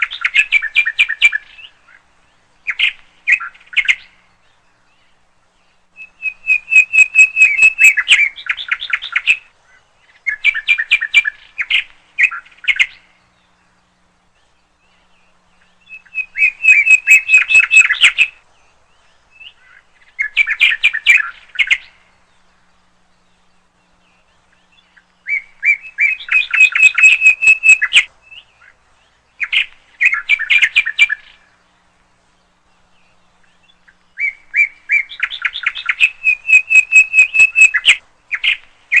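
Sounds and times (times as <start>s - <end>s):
songbird chirping: 0.0s - 39.0s.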